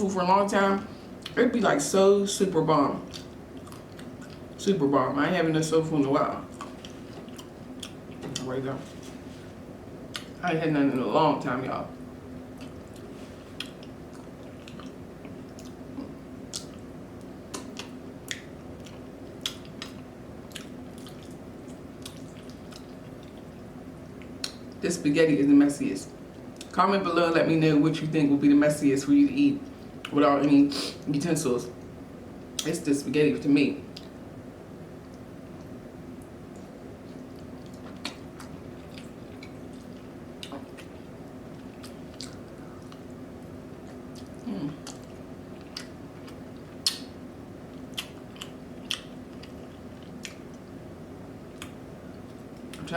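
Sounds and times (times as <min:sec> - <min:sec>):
steady low hum: 0:00.0 - 0:52.9
chewing with wet mouth smacks: 0:03.1 - 0:04.6, 0:06.5 - 0:08.5, 0:10.1 - 0:10.4, 0:12.5 - 0:24.8, 0:33.9 - 0:34.2, 0:35.0 - 0:50.7, 0:51.4 - 0:52.9.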